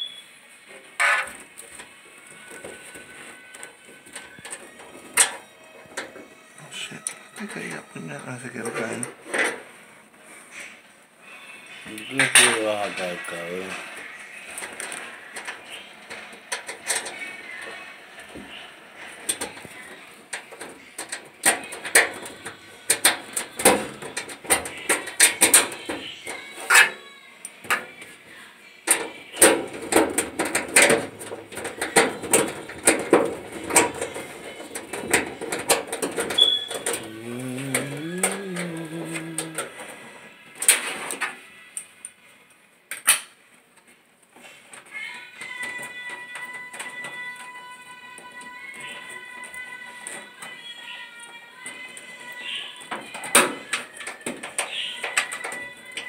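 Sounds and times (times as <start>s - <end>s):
sheet-metal panels clanking: 28.9s - 38.4s.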